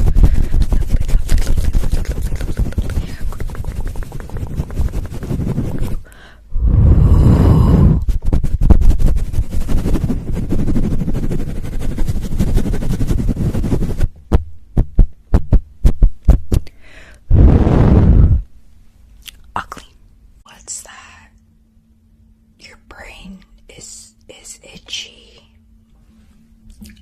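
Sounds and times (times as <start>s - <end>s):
rubbing and scratching on microphone: 0.0s - 6.1s, 6.8s - 16.6s.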